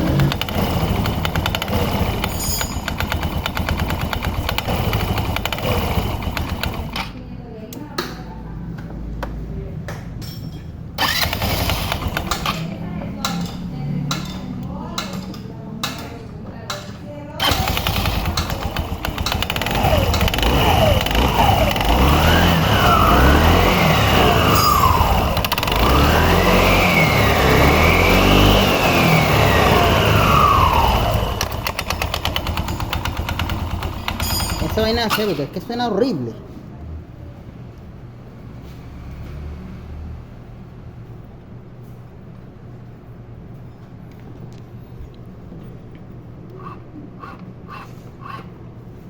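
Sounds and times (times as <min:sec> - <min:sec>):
scooter engine harsh mechanical noise: 0:00.0 - 0:07.2, 0:11.0 - 0:13.5, 0:17.4 - 0:35.6.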